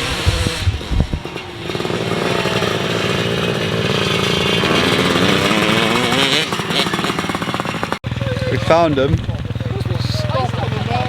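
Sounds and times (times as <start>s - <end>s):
low thumps: 0.0s - 1.5s
motocross bike engine buzzing: 0.0s - 11.0s.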